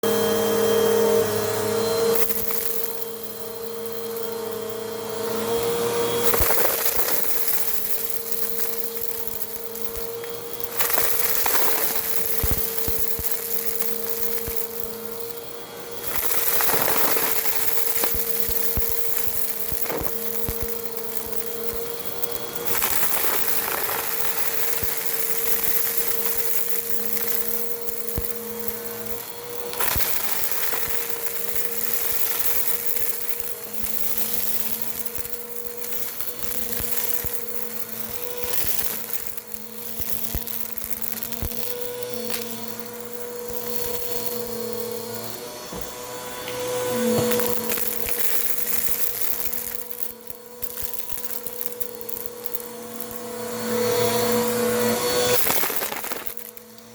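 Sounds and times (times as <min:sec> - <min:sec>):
vacuum cleaner running: 0:00.0 - 0:56.9
small ticks and crackles: 0:01.1 - 0:56.9.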